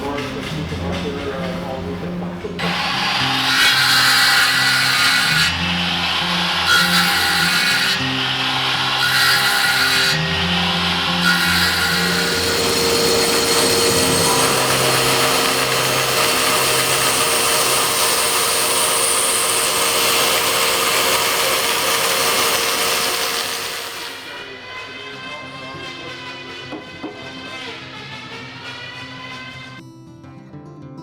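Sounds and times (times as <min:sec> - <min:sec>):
music: 0:00.0 - 0:31.0
power tool running: 0:02.5 - 0:24.7.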